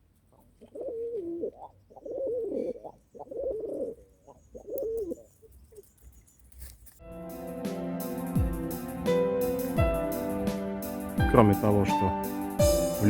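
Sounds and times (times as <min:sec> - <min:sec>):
pigeon cooing: 0:00.3 - 0:05.9.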